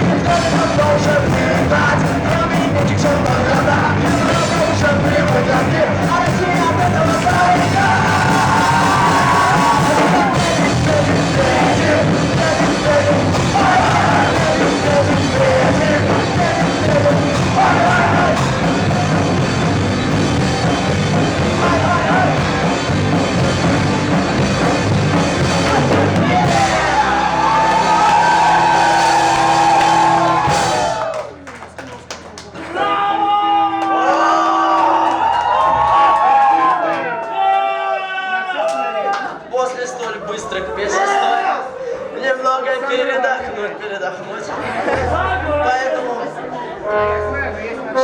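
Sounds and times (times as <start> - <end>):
person shouting and singing: 0.0 - 19.4, 21.4 - 22.7
live punk rock band: 0.0 - 31.1.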